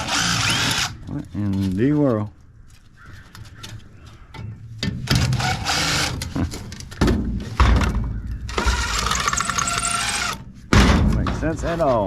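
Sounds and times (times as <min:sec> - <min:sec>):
cordless drill running: 0:00.0 - 0:01.0, 0:08.6 - 0:10.4.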